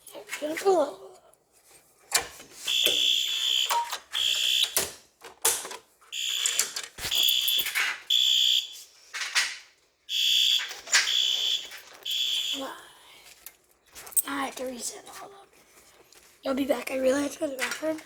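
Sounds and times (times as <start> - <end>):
fire alarm horn beeping: 2.6 - 5.0, 6.1 - 8.9, 10.1 - 12.8.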